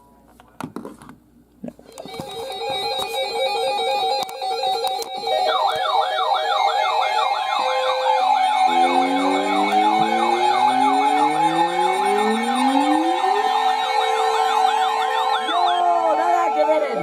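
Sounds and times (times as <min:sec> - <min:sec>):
rising alarm wails: 0:02.1 - 0:17.0
fast whooping alarm: 0:02.2 - 0:17.0
steady electronic tone: 0:06.6 - 0:16.6.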